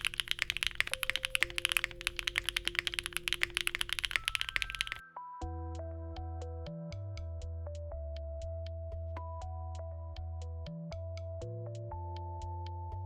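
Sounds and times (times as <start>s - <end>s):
mechanical keyboard typing: 0.0s - 5.0s.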